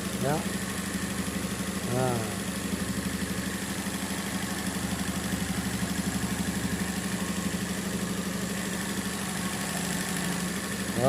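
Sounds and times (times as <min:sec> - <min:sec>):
small truck engine idling: 0:00.0 - 0:11.0.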